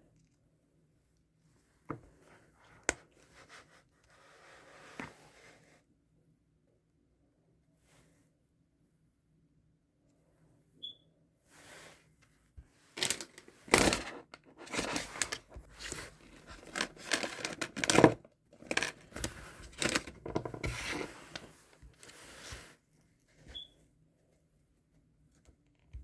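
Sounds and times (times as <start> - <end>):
wrapping crinkling and tearing: 13.0 - 20.1.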